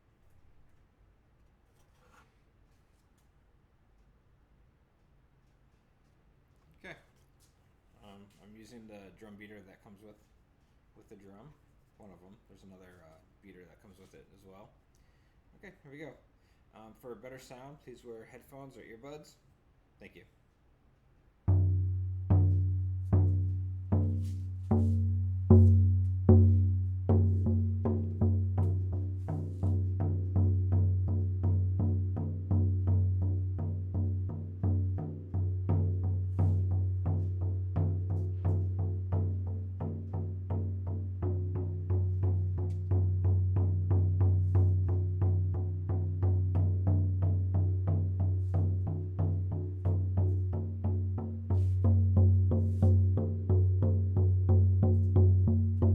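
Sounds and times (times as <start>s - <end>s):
frame drum beats: 21.5s - 55.9s.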